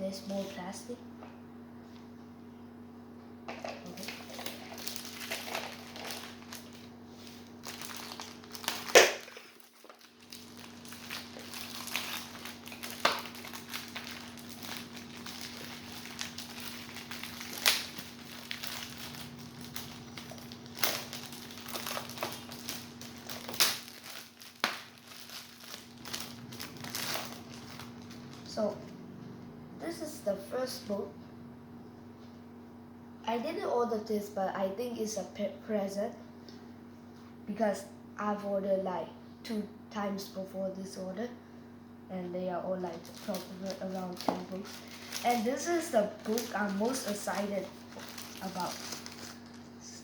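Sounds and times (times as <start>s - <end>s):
plastic packaging crinkling: 3.6s - 28.8s, 42.8s - 50.0s.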